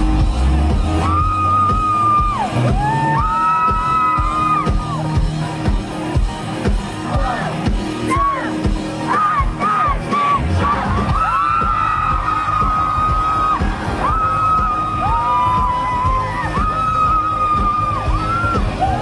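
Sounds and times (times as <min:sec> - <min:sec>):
audience whooping: 0:00.0 - 0:05.2, 0:10.7 - 0:19.0
live band playing: 0:00.0 - 0:19.0.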